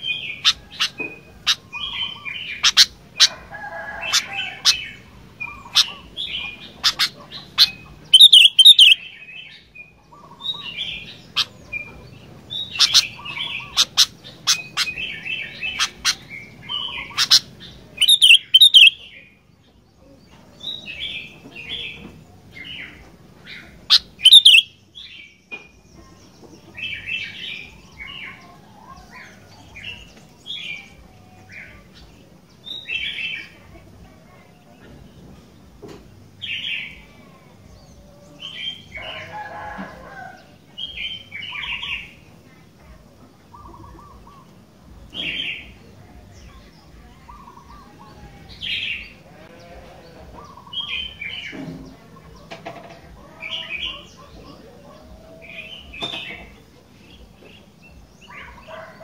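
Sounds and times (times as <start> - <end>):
bird singing bubbly phrases: 4.5 - 11.9, 12.5 - 19.1, 23.9 - 24.8.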